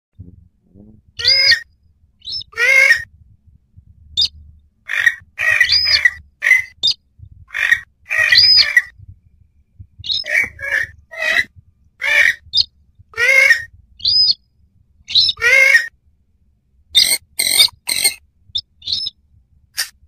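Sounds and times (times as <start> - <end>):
harsh squawking bird calls: 1.2 - 3.1, 4.9 - 8.9, 10.0 - 14.4, 15.1 - 15.9, 17.0 - 19.2.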